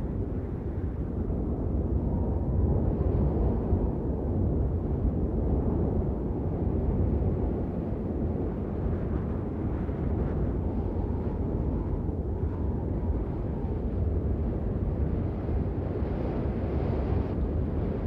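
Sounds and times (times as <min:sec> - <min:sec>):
wind on microphone: 0:00.0 - 0:18.0.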